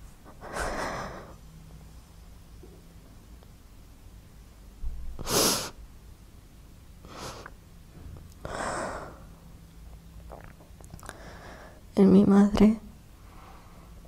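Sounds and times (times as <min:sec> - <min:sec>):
person breathing hard: 0:00.3 - 0:01.4, 0:08.4 - 0:09.4, 0:11.0 - 0:11.9.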